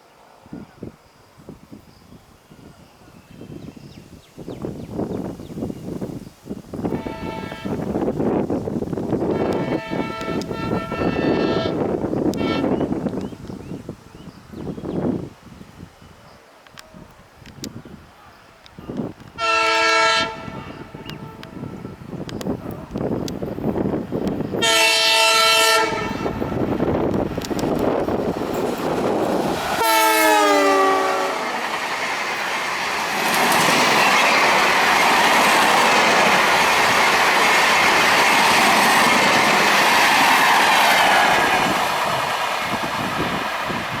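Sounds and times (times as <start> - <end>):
train wheels rushing on rails: 4.6 - 13.8, 18.7 - 44.0
locomotive horn blasts: 6.8 - 8.1, 9.3 - 13.0, 19.4 - 22.2, 24.6 - 26.6, 29.8 - 31.6.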